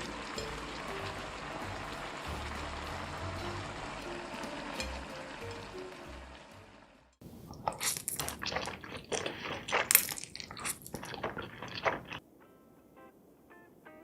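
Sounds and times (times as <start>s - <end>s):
background music: 0.0s - 7.1s
crunchy wet bites and chewing: 7.5s - 12.2s.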